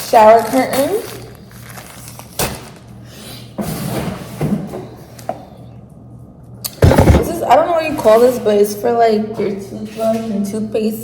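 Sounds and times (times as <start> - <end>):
packaging rustling: 0.0 - 2.9.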